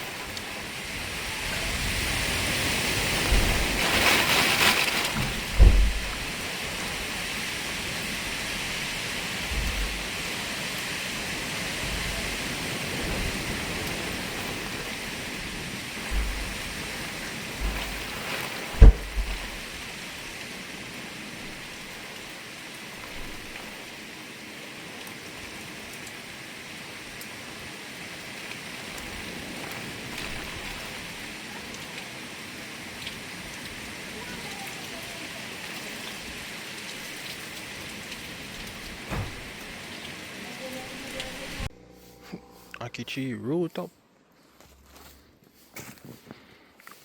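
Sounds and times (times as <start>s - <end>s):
wind buffeting microphone: 0.0s - 20.5s
steady rain hissing: 0.0s - 43.9s
sharp knock: 18.8s - 19.4s.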